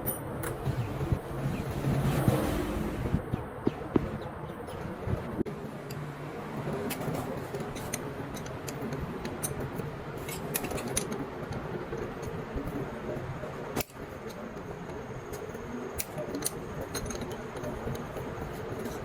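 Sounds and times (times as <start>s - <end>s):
metal tools clicking and clinking: 0.0s - 0.6s, 6.9s - 11.3s, 15.3s - 19.0s
steady background noise: 0.0s - 19.0s.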